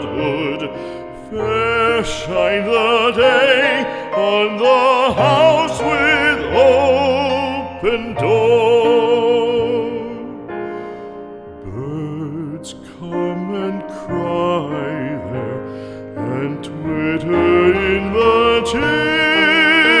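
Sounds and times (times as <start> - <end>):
slow tender music: 0.0 - 20.0.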